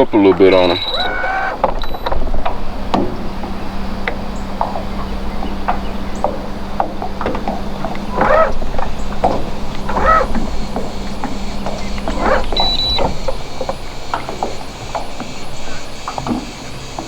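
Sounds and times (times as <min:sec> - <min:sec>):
electric trolling motor humming: 0:00.0 - 0:17.0
short squeaky chirps: 0:00.5 - 0:02.0, 0:08.1 - 0:10.7, 0:11.8 - 0:13.4.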